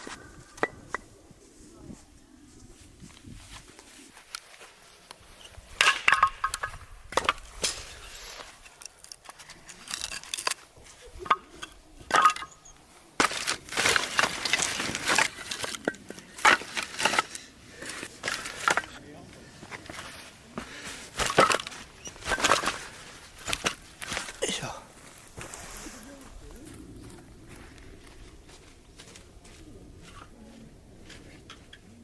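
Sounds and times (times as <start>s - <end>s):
crunching and snapping: 5.8s - 11.4s, 13.2s - 19.0s.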